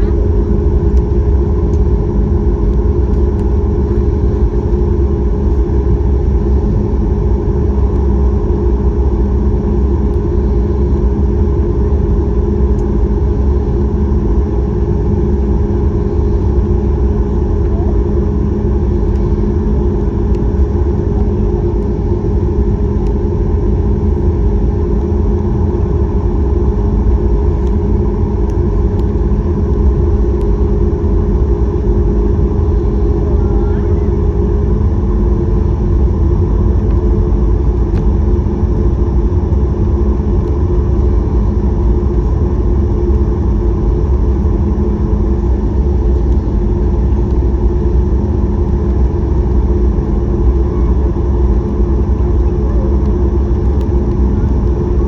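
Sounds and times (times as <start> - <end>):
aircraft cabin engine rumble: 0.0 - 55.0
low droning hum: 0.0 - 55.0.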